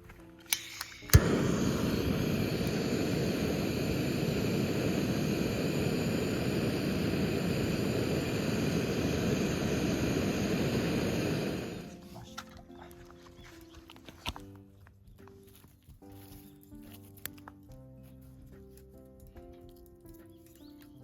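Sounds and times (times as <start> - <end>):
gas torch roaring: 0.5 - 12.1.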